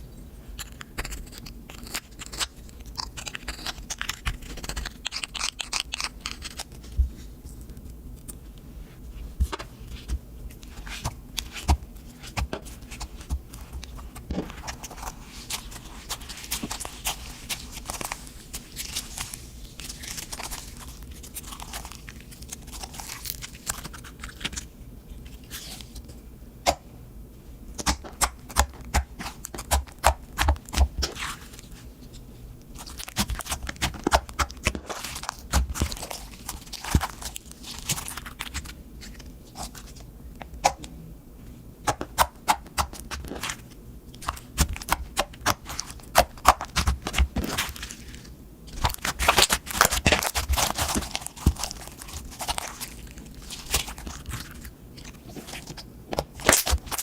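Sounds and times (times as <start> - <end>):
slime squishing: 8.9 - 24.7, 41.9 - 57.0.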